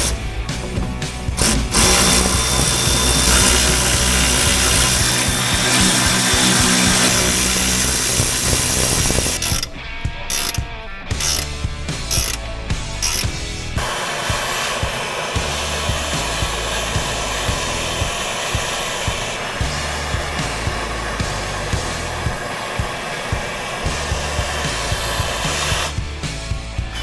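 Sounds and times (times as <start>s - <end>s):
ratchet spinning nut: 0.0s - 13.5s.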